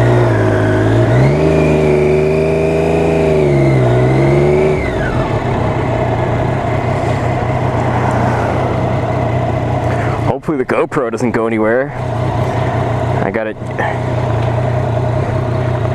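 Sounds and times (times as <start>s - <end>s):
motorcycle engine revving: 0.0s - 15.9s
even rushing noise: 4.8s - 10.4s.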